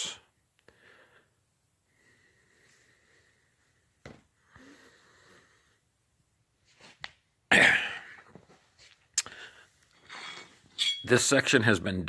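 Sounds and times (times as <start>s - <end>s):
person sneezing loudly: 7.5s - 8.2s.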